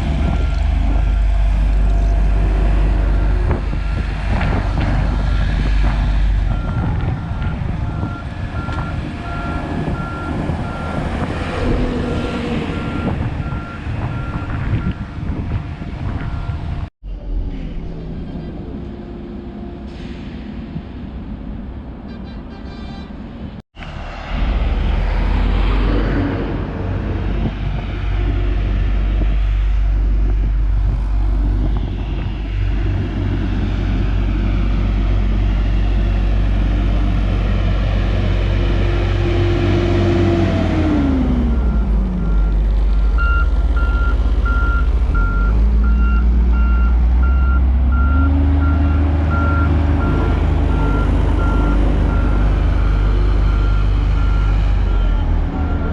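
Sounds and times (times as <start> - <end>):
heavy diesel machinery rumble: 0.0 - 55.9
reversing alarm beeping: 41.6 - 55.9.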